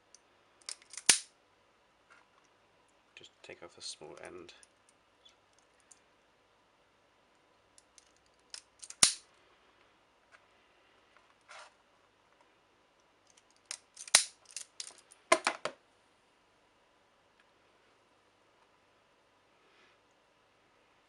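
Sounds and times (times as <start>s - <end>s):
wire strippers snipping: 0.7s - 1.3s.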